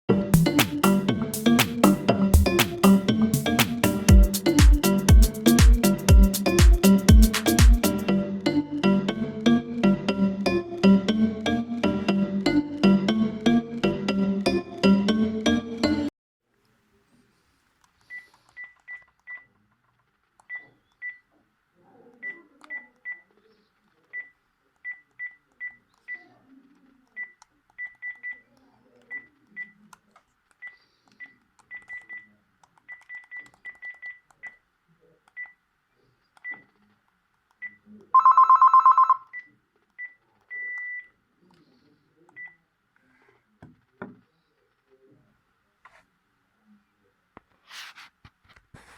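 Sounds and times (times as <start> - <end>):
phone key beeps: 30.6 - 32.3, 32.9 - 34.6, 37.6 - 41.1
phone trilling tone: 38.2 - 39.3.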